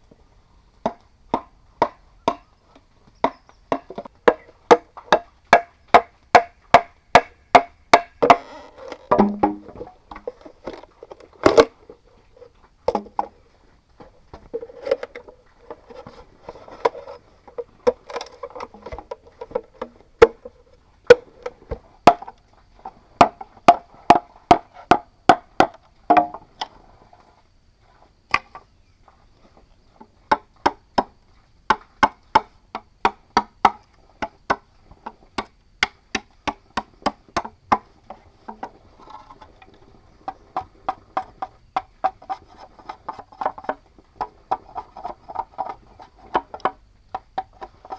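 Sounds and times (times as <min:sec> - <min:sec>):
blade chopping bamboo: 0:03.2 - 0:11.8, 0:31.7 - 0:34.6, 0:35.4 - 0:37.9.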